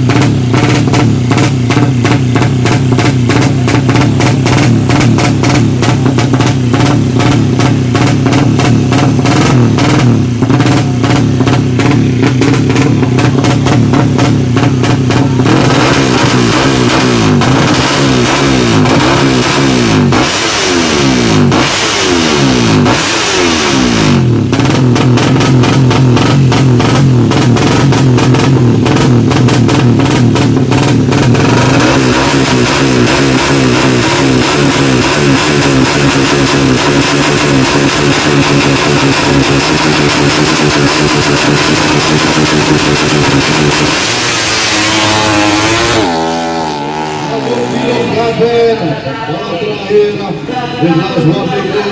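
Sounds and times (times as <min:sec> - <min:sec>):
motorcycle engine revving: 0:00.0 - 0:51.9.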